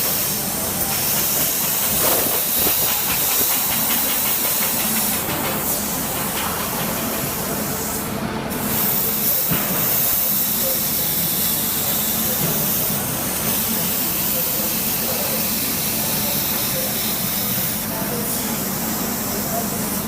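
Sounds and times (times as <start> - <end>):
plasma torch cutting metal: 0.0 - 20.0.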